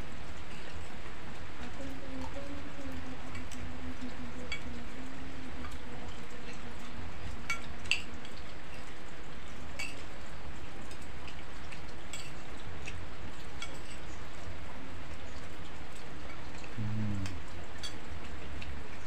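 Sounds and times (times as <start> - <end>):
rain falling: 0.0 - 19.0
spoons clinking against plates: 9.8 - 10.1, 12.1 - 12.4.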